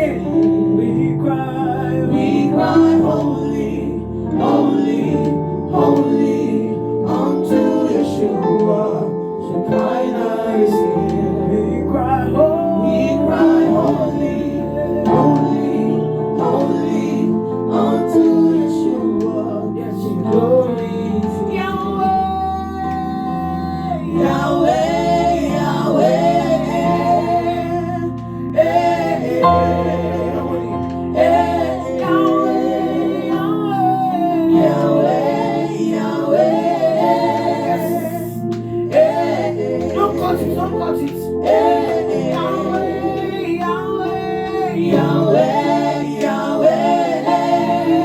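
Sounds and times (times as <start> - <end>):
choir singing gospel: 0.0 - 48.0
held keyboard chords: 0.0 - 48.0.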